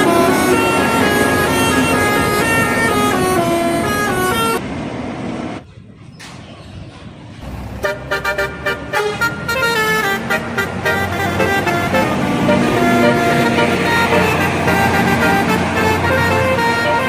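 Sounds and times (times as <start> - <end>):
multi-tone bus air horn melody: 0.0 - 4.6, 7.6 - 17.0
traffic noise: 0.0 - 17.0.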